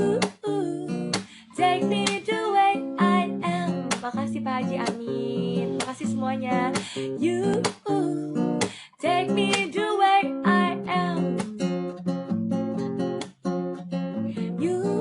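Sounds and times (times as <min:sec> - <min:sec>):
wordless vocal line: 0:00.0 - 0:11.4
acoustic guitar strumming chords: 0:00.0 - 0:15.0.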